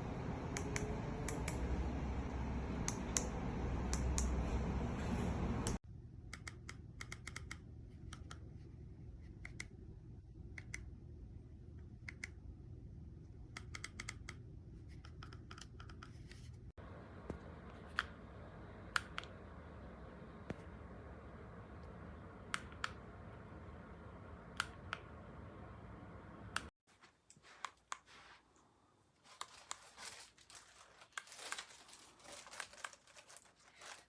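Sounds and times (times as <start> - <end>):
faint steady hum: 0.0 - 15.4, 16.1 - 26.7.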